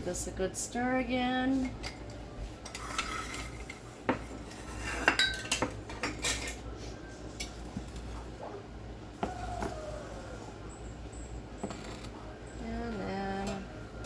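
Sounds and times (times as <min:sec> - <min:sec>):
spoon clinking and scraping a pot: 0:02.6 - 0:06.6.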